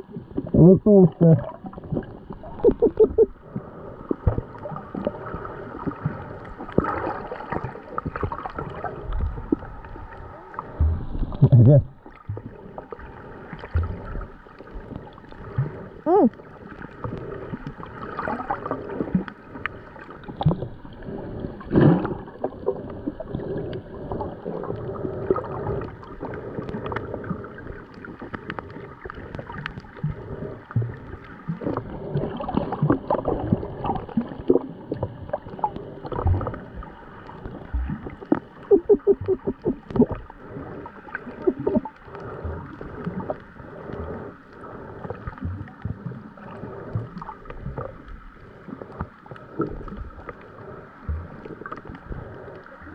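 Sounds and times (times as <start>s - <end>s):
underwater water sloshing: 0.0s - 52.9s
underwater clicks and knocks: 37.8s - 40.2s.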